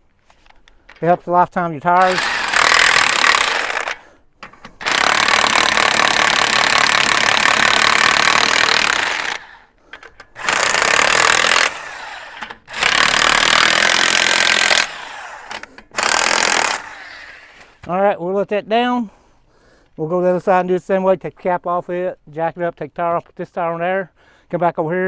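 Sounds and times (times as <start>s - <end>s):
impact wrench hammering: 10.0s - 11.8s.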